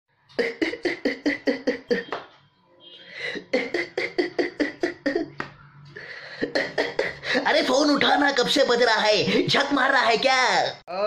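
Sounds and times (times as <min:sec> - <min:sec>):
man imitating a ringtone vocally: 0:00.4 - 0:02.2, 0:03.4 - 0:05.4, 0:06.4 - 0:09.0.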